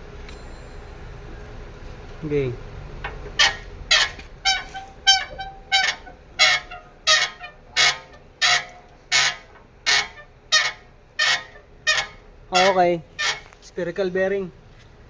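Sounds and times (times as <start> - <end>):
shock absorber squeaking: 3.0 - 13.8.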